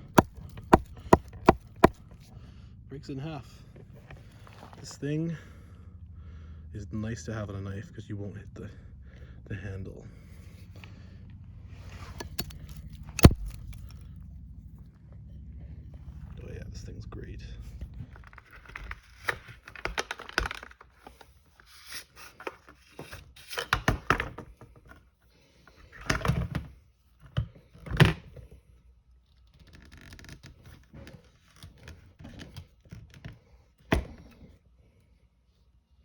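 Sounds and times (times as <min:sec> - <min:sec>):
knife knocking and cracking wood: 0:00.0 - 0:02.0, 0:12.2 - 0:13.9.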